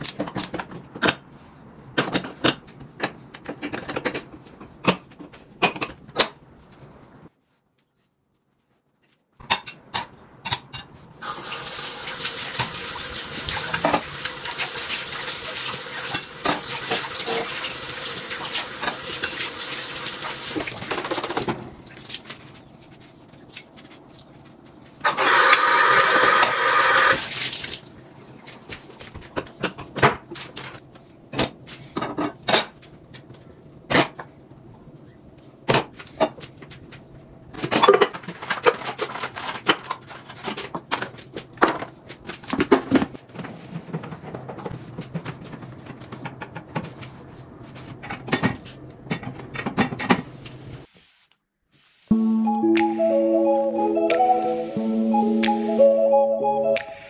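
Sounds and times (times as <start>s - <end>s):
water running from a tap: 11.2s - 20.8s.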